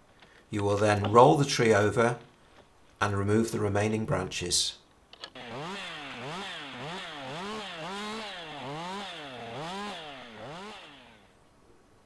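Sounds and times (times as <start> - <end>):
chainsaw engine revving: 5.4 - 11.4.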